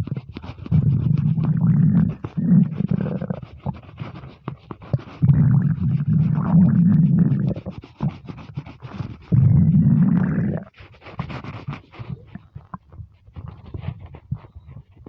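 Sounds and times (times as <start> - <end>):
rapid gurgling clicks: 0.0 - 13.9
stomach rumbling: 0.0 - 15.0.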